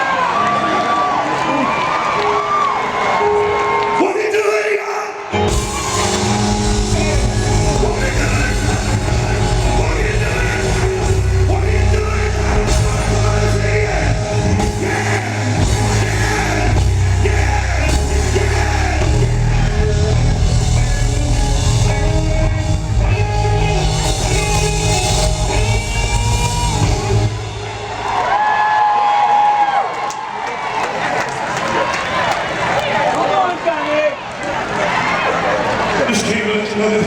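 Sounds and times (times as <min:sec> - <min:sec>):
man singing: 0:04.0 - 0:27.3
live band playing: 0:05.3 - 0:28.6
heavy bass line: 0:05.5 - 0:28.0.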